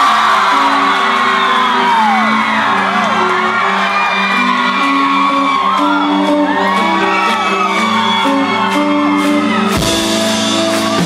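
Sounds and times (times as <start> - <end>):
audience whooping and cheering: 0.0 - 11.0
live rock band playing: 0.0 - 11.0.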